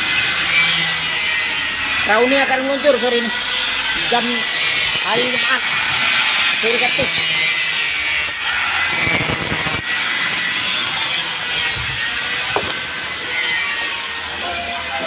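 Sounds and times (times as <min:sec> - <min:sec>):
sawing on wood: 0:00.0 - 0:14.4.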